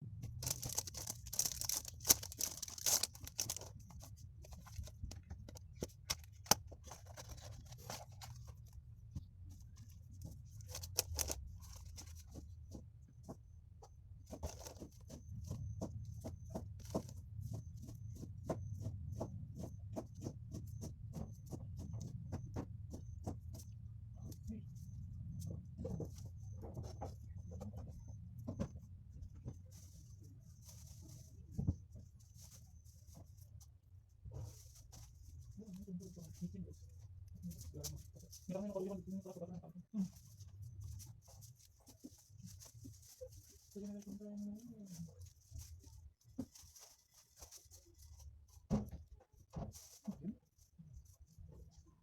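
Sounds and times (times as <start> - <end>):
low steady hum: 0.0 - 49.0
paper and plastic packaging rustling: 0.2 - 12.4, 14.3 - 15.6, 16.5 - 17.2, 34.3 - 51.2.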